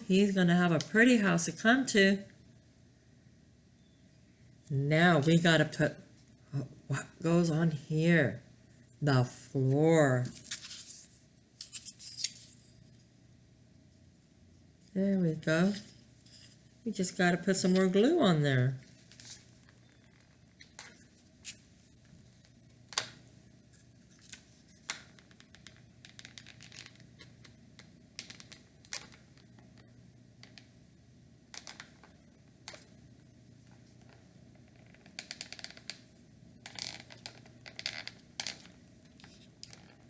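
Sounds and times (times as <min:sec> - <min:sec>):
faint steady hum: 0:00.0 - 0:40.0.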